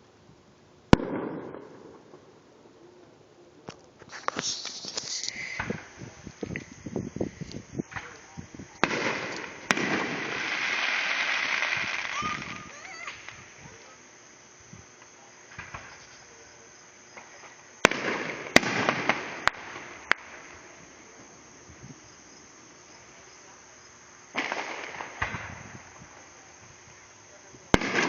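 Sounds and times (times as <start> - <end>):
crickets chirping: 0.0 - 28.0
fireworks crackling: 0.0 - 28.0
fireworks bangs: 0.9 - 28.0.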